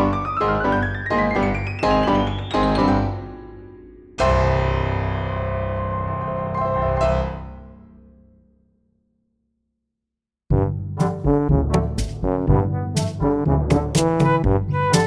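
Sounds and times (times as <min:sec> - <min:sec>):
piano music: 0:10.9 - 0:15.0.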